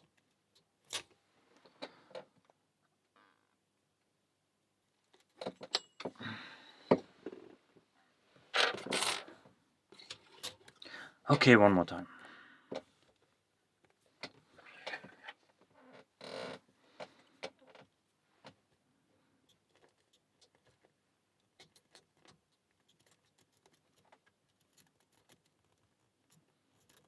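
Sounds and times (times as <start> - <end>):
lock picks clicking and scraping: 19.5 - 27.0.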